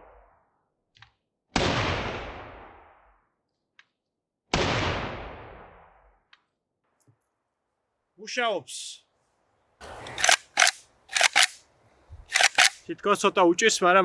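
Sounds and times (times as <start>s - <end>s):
rifle shots with echo: 1.5s - 3.2s, 4.5s - 6.2s
faint rifle clicks: 10.0s - 12.8s.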